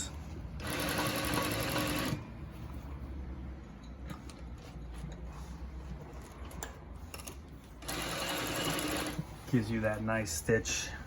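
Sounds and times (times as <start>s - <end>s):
sewing machine stitching: 0.6s - 2.2s, 7.1s - 9.3s.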